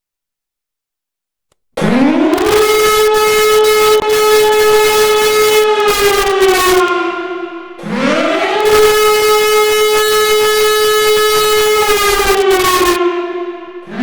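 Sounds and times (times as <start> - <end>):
siren wailing: 1.8 - 14.0.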